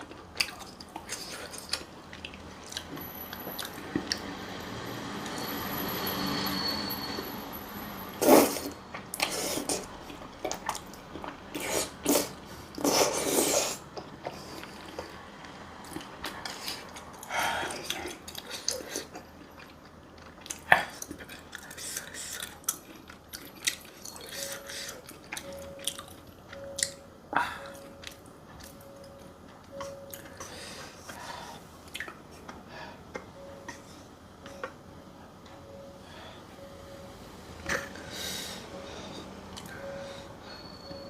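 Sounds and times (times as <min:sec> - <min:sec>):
biting and chewing food: 0:08.9 - 0:27.0
faint short beeps: 0:39.7 - 0:41.0.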